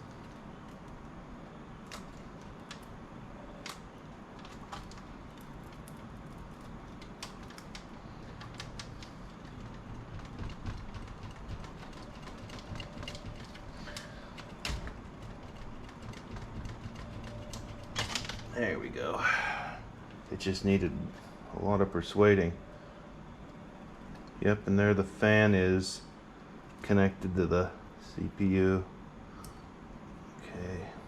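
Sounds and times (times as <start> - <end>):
steady low hum: 0.0 - 31.0
clicks and knocks of plastic case: 8.3 - 18.5.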